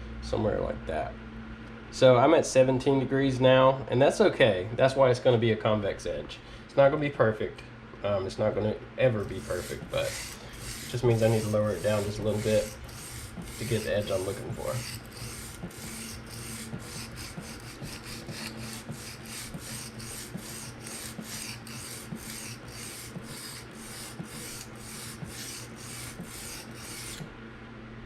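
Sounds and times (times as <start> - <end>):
knife scraping on sharpening stone: 9.2 - 27.2.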